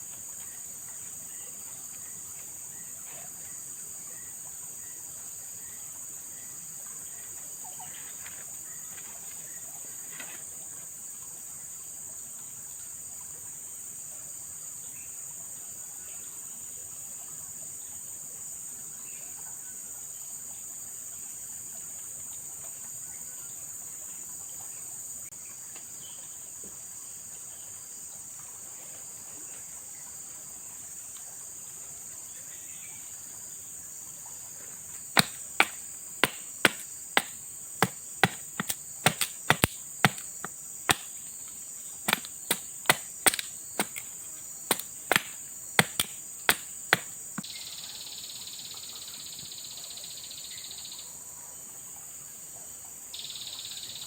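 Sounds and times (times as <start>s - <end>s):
high-pitched insect chorus: 35.0s - 51.0s, 53.1s - 54.0s
sharp knocks: 35.2s - 41.5s, 42.1s - 47.1s.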